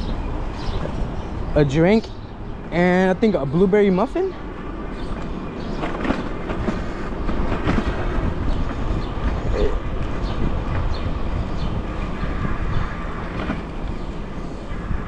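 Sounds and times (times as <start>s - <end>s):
wind rumble on microphone: 0.0s - 15.0s
bike clicks and rattles: 5.0s - 9.4s.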